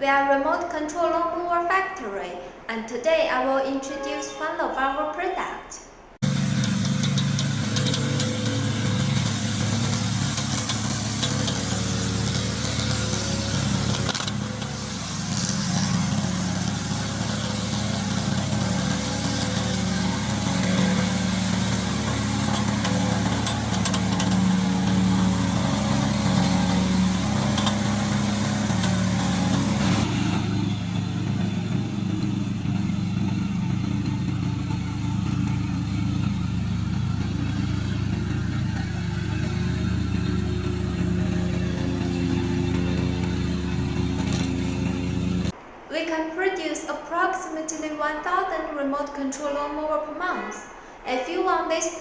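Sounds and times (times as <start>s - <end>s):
hissing: 6.2s - 45.5s
lawn mower engine running: 6.2s - 45.6s.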